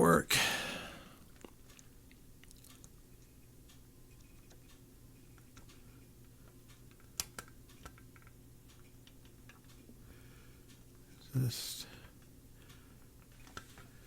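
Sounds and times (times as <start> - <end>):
steady low hum: 0.0 - 14.0
soldering iron clicks and ticks: 2.5 - 10.0.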